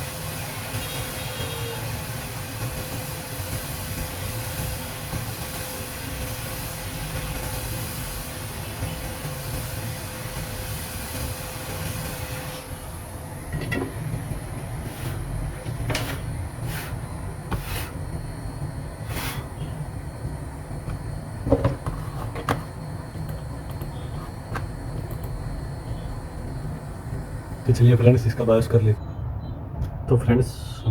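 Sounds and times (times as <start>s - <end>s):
steady hiss: 0.0s - 12.9s.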